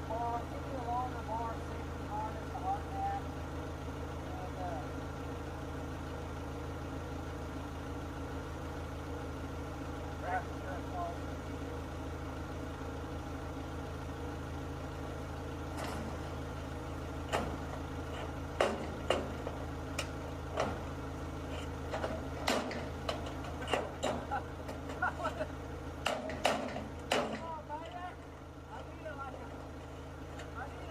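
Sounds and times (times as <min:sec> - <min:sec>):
engine idling: 0:00.0 - 0:30.9
metal sheeting knocks and clanks: 0:26.1 - 0:27.4.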